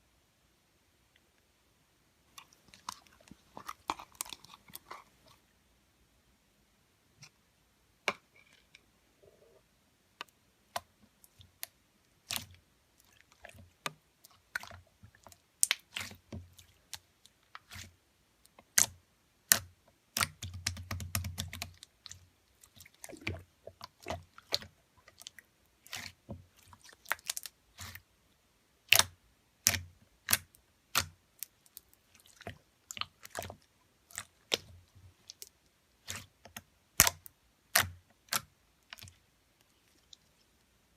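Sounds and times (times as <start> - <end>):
slime squishing: 2.3 - 5.5, 10.6 - 28.2, 28.8 - 40.6
slime clicking and popping: 28.9 - 31.8, 35.3 - 39.2.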